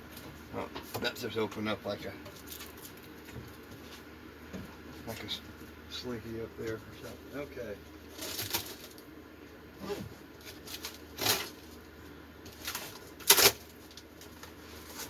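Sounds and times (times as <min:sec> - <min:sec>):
packing material rustling: 0:08.1 - 0:09.0, 0:09.8 - 0:15.0.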